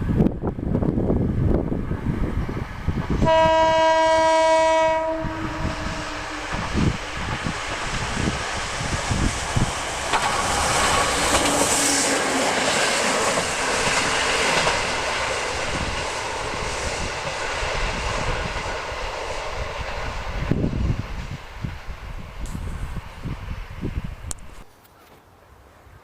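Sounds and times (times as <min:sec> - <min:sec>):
diesel train running past: 0:00.0 - 0:24.7
wind buffeting microphone: 0:00.0 - 0:24.7.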